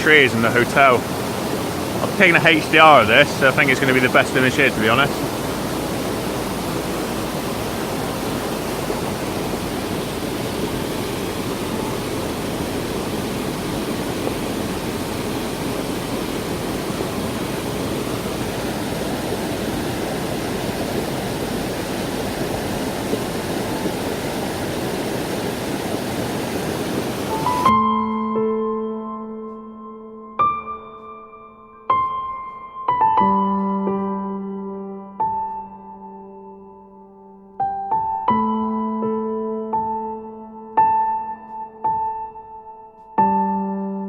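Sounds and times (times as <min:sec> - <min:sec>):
waterfall rushing roar: 0:00.0 - 0:27.7.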